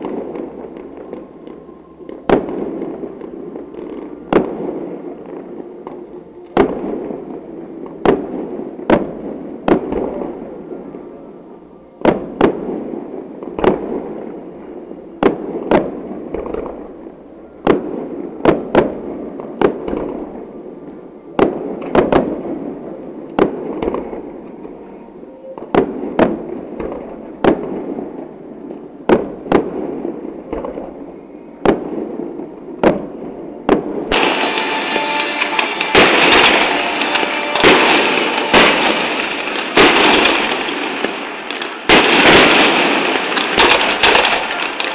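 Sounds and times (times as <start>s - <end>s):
firework shells banging: 34.1s - 44.9s.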